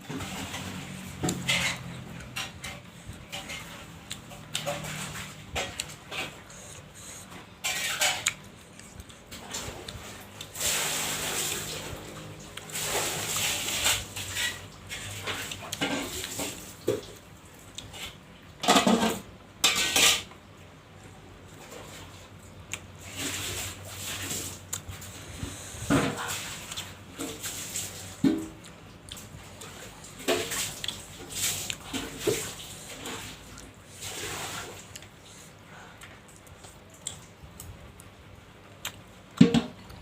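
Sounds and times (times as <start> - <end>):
chewing and mouth sounds: 0.3 - 10.6, 21.9 - 27.7, 28.4 - 39.1.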